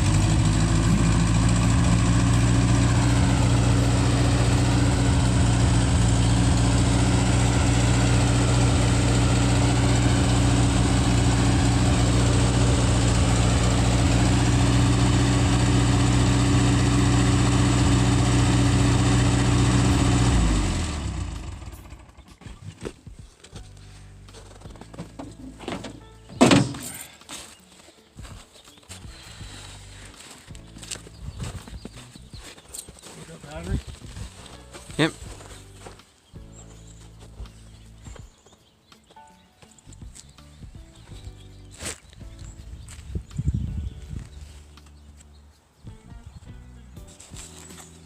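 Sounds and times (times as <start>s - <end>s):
skid steer engine running: 0.0s - 23.0s.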